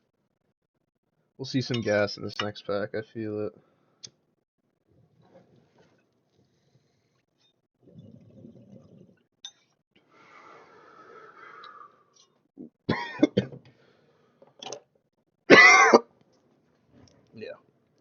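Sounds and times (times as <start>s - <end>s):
long breathy exhale: 10.1s - 12.1s
person coughing: 12.9s - 13.6s, 15.5s - 16.1s.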